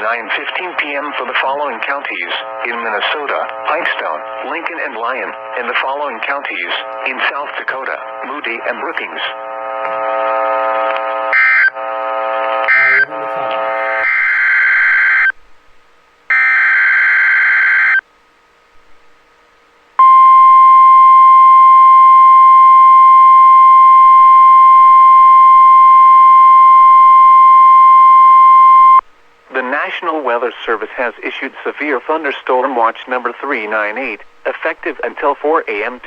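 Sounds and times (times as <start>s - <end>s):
steady warning alarm tone: 12.7s - 15.4s, 16.3s - 18.0s, 20.0s - 29.0s.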